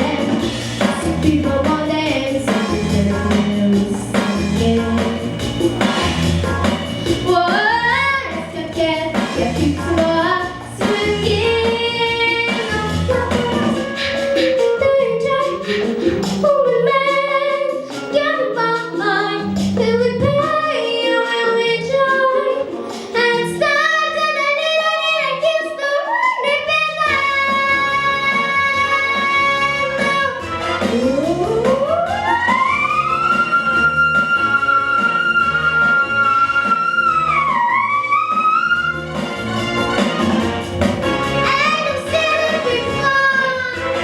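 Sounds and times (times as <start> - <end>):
girl singing: 0.0 - 5.3, 6.5 - 32.5, 41.4 - 44.0
instrumental backing track: 0.0 - 44.0.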